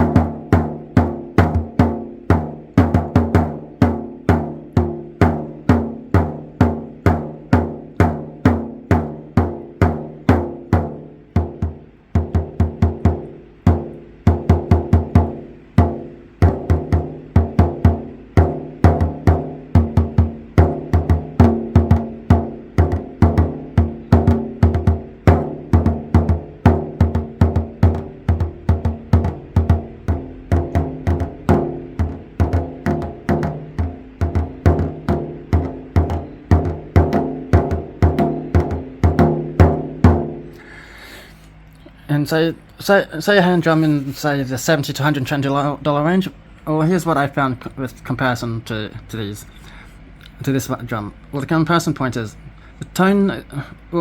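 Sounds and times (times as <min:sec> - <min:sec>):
frame drum booming strokes: 0:00.0 - 0:41.6.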